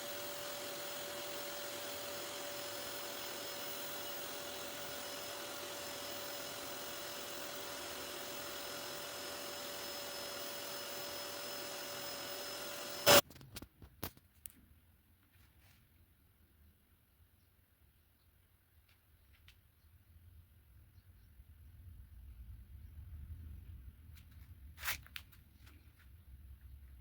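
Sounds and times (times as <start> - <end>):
vacuum cleaner running: 0.0 - 13.2.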